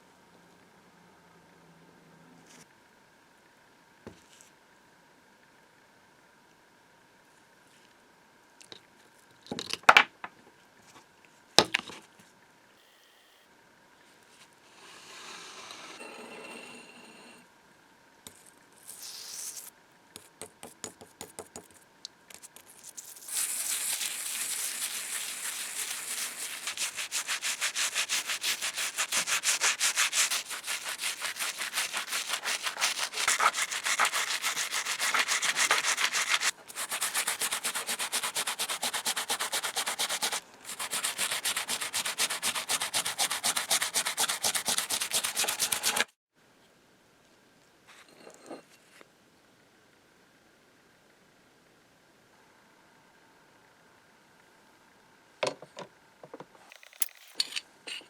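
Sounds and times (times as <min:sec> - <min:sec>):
brush scrubbing cast iron: 0:23.0 - 0:46.1.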